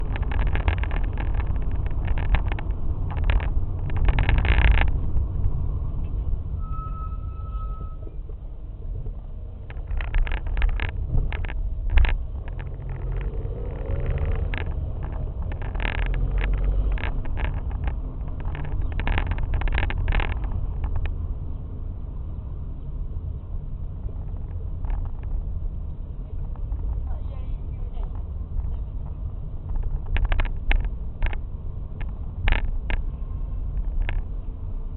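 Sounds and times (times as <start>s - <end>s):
knocks and rattles: 0.0s - 6.2s, 9.6s - 21.2s, 24.0s - 25.5s, 26.2s - 27.2s, 28.0s - 33.1s, 33.7s - 34.4s
brakes squealing: 0.0s - 8.9s, 9.5s - 21.2s
car rolling with low rumble: 0.0s - 34.9s.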